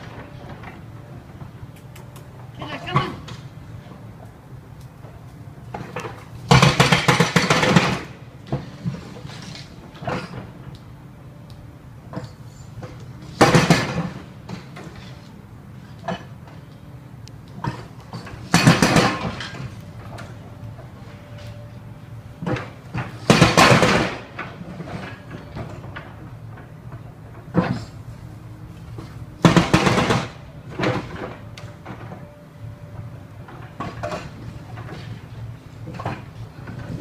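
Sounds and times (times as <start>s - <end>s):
steady low hum: 0.0s - 37.0s
harsh construction bursts: 6.5s - 10.5s, 22.4s - 26.0s, 29.0s - 32.2s
knocks and clatters: 17.5s - 21.5s, 29.0s - 32.3s.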